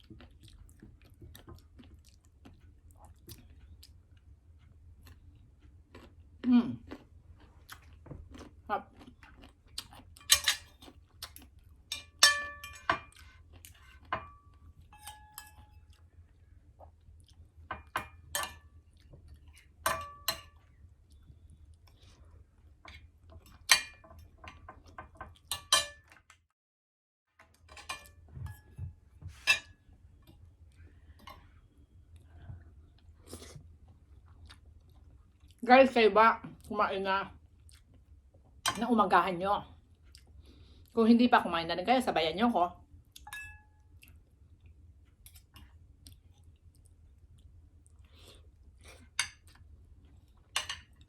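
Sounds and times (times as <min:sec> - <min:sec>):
chewing: 0:00.0 - 0:11.9, 0:13.0 - 0:17.9, 0:32.1 - 0:35.6, 0:37.6 - 0:38.2, 0:39.8 - 0:41.0, 0:43.9 - 0:51.0
utensils clinking on plate: 0:10.2 - 0:10.9, 0:11.9 - 0:13.2, 0:14.1 - 0:15.8, 0:19.8 - 0:20.6, 0:23.4 - 0:26.2, 0:27.6 - 0:28.8, 0:29.4 - 0:29.8, 0:43.2 - 0:43.6, 0:50.6 - 0:51.0.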